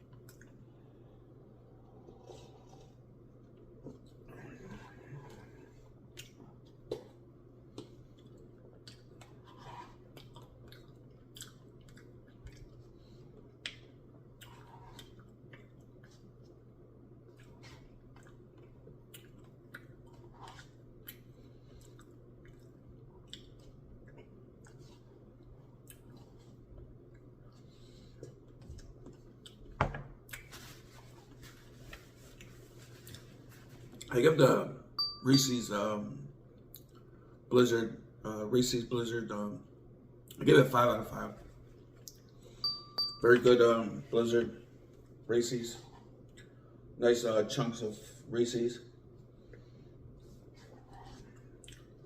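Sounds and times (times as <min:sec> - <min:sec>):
steady low hum: 0:00.0 - 0:52.0
person chewing: 0:01.9 - 0:04.3, 0:05.2 - 0:30.5, 0:50.2 - 0:52.0.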